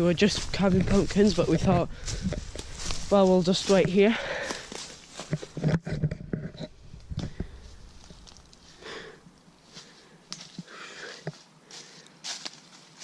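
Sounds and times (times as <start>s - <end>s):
footsteps on woodland floor: 0.0s - 13.0s.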